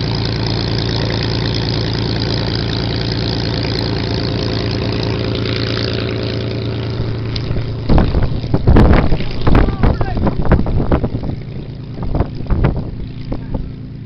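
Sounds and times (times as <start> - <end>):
piston aircraft engine running: 0.0 - 14.0
wind buffeting microphone: 4.0 - 14.0.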